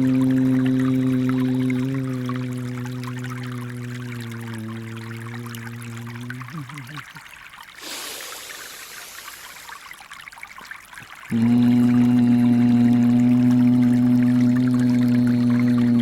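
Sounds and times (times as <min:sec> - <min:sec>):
low humming tone: 0:00.0 - 0:07.1, 0:11.3 - 0:16.0
water trickling: 0:00.0 - 0:16.0
breath-like whoosh of hiss: 0:07.8 - 0:09.8.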